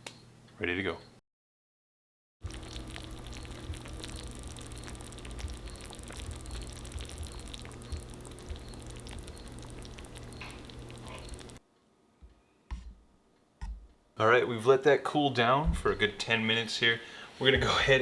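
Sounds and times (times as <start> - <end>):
food sizzling in baking dish: 2.4 - 11.6
low even hum: 2.4 - 18.0.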